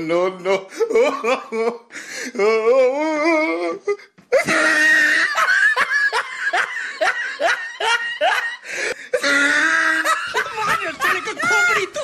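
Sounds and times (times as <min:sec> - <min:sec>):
hearty laughter: 0:04.3 - 0:12.0.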